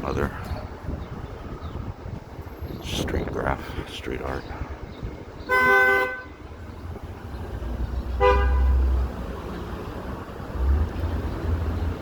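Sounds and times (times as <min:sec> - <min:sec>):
passing traffic rumble: 0:00.0 - 0:12.0
car horn honking: 0:05.5 - 0:06.4, 0:08.2 - 0:08.8.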